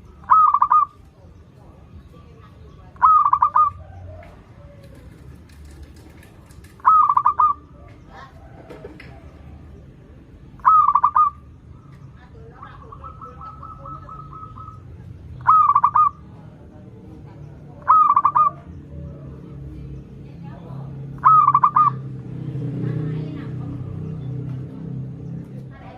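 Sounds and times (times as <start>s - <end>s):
dove cooing: 0.0s - 1.1s, 2.8s - 16.6s, 17.7s - 19.7s, 21.1s - 22.2s.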